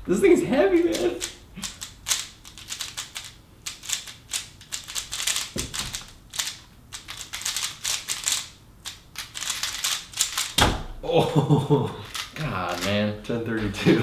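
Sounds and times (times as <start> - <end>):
puzzle cube clicking clatter: 0.9 - 10.6, 12.0 - 13.0
heavy thud: 10.6 - 11.3.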